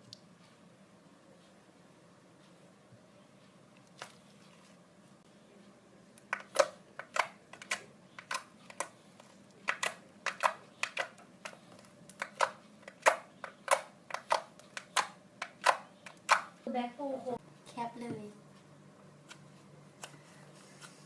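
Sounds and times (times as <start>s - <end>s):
fingers popping sticky slime: 9.6s - 16.6s.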